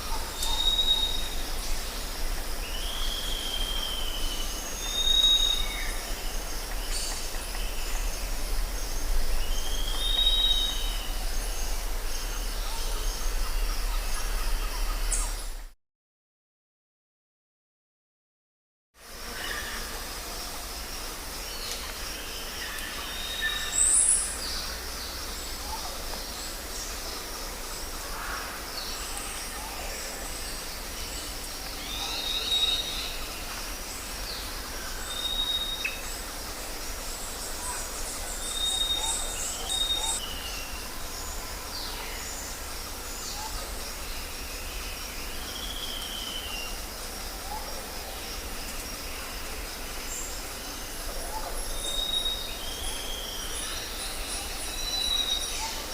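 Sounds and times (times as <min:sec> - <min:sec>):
steady hiss: 0:00.0 - 0:15.7, 0:19.0 - 0:55.9
birds whistling and chirping: 0:00.3 - 0:01.4, 0:02.7 - 0:06.0, 0:09.5 - 0:11.1, 0:38.4 - 0:40.7.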